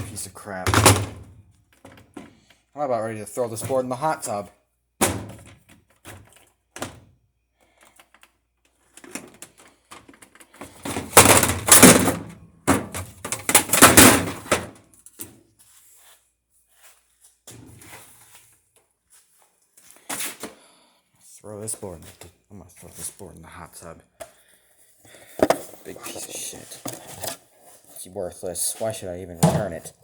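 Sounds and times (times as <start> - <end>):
hard parts knocking and clattering: 0.0 - 2.4, 9.0 - 14.8, 25.3 - 27.4.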